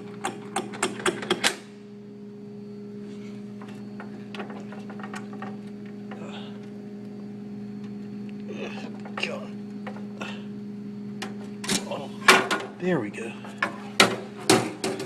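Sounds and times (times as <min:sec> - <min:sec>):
vending machine humming: 0:00.0 - 0:15.0
vending machine clicks and rattles: 0:00.2 - 0:01.6, 0:13.6 - 0:15.0.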